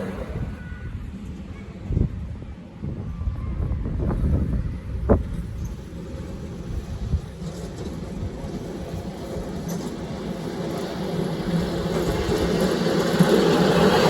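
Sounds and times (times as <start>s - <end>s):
miniature locomotive running: 5.2s - 14.0s.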